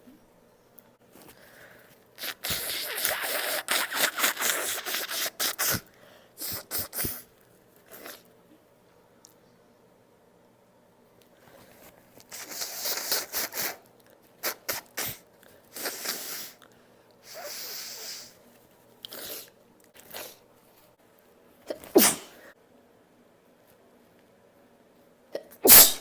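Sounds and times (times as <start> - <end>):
person sneezing: 2.2 - 7.3, 21.7 - 22.5, 25.4 - 26.0.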